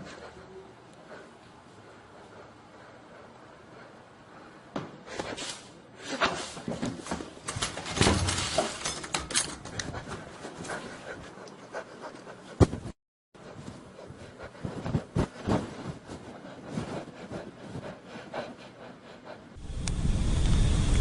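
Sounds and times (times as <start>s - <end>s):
loud low rumbling: 19.6s - 21.0s.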